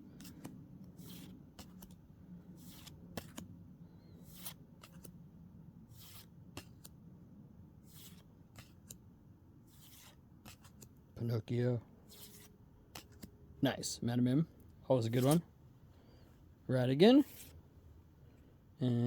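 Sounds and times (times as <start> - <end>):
cards sliding soft swishes: 0.0 - 5.2, 5.9 - 7.0, 7.8 - 9.0, 9.6 - 11.0, 12.0 - 13.3, 15.0 - 15.4, 17.2 - 17.6
light clicks of cards: 0.2 - 2.0, 2.7 - 3.5.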